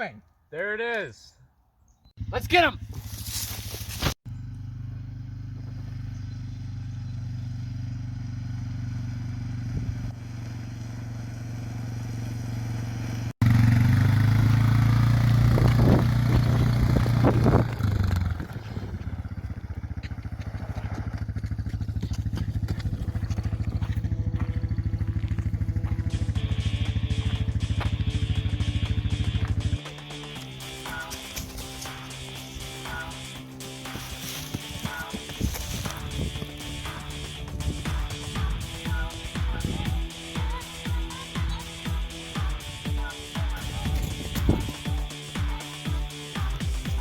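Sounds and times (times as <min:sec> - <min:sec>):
motorcycle engine running: 0:02.2 - 0:47.0.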